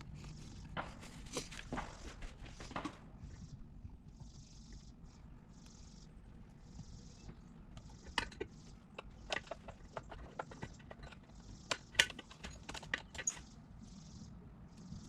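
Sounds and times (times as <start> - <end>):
hand tools clicking and knocking: 0.8 - 3.1, 7.2 - 13.4.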